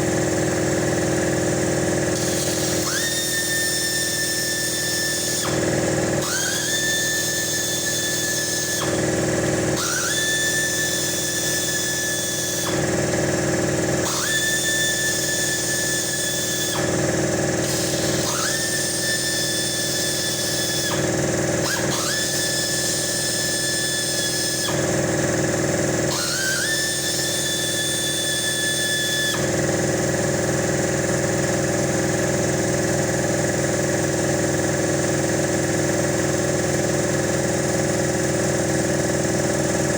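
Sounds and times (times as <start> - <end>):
small electric motor whining: 1.7 - 31.7.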